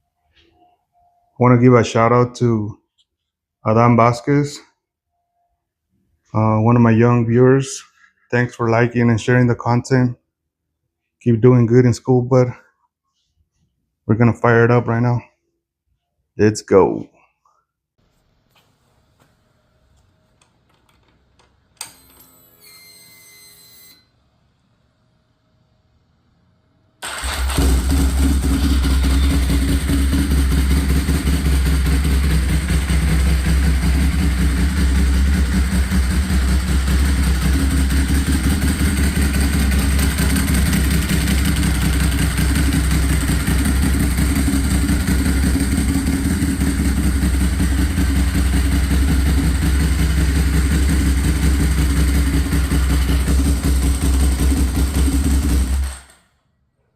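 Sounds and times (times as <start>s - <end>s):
motorcycle engine running: 27.1s - 56.0s.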